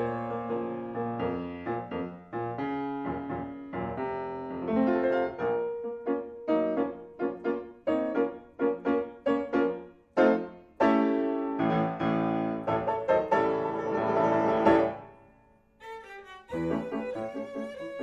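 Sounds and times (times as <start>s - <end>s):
violin: 15.8s - 18.0s.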